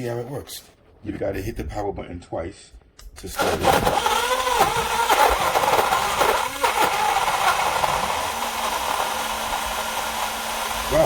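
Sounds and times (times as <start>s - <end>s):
portable blender motor whirring: 3.3s - 11.0s.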